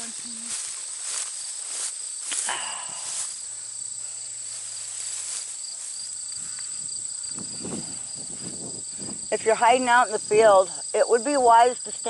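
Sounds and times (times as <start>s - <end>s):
crickets chirring: 0.0s - 12.0s.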